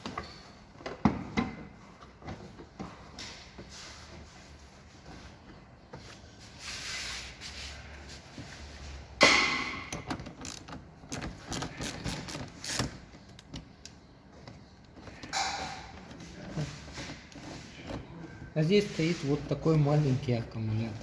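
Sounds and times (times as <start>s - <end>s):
clicks and clatter of parts: 9.3s - 18.1s.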